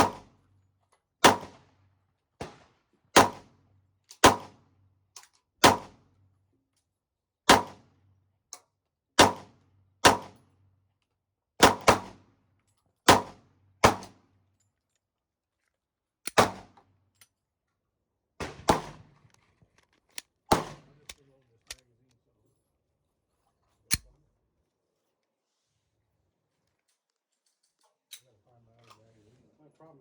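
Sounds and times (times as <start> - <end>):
pistol shots: 16.3 - 16.7, 18.4 - 19.0, 20.5 - 21.2.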